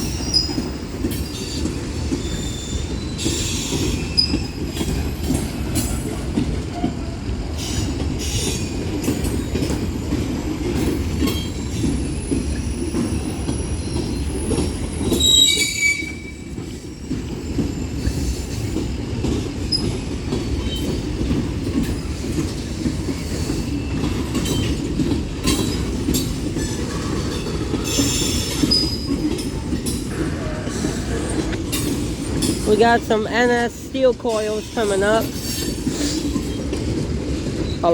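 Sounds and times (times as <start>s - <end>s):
train wheels rumbling on rail: 0.0s - 37.9s
high wheel squeals: 1.2s - 4.6s, 12.0s - 18.4s, 26.6s - 29.4s.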